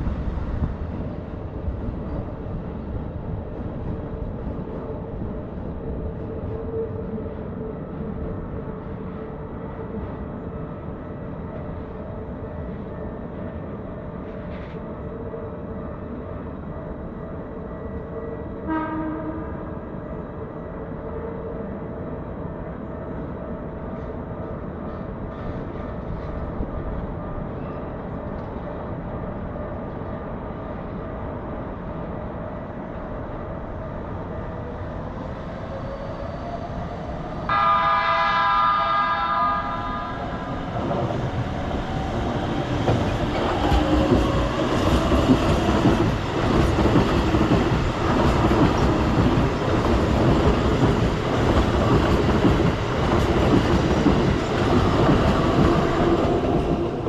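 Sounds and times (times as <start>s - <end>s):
train rumbling past: 0.0s - 57.0s
train horn blast: 18.6s - 19.7s, 37.5s - 40.6s.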